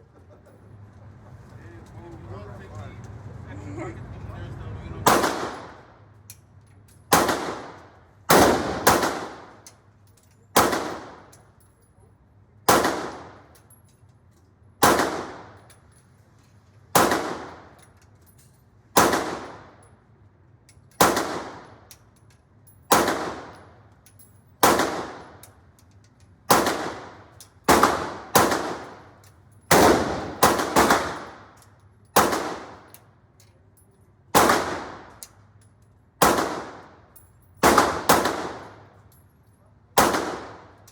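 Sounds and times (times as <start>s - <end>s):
gunshots with echoing tail: 5.1s - 5.8s, 7.1s - 9.5s, 10.6s - 11.3s, 12.7s - 13.4s, 14.8s - 15.6s, 17.0s - 17.7s, 19.0s - 19.7s, 21.0s - 21.6s, 22.9s - 23.6s, 24.6s - 25.4s, 26.5s - 29.1s, 29.7s - 31.5s, 32.2s - 32.8s, 34.4s - 35.1s, 36.2s - 36.9s, 37.6s - 38.8s, 40.0s - 40.8s.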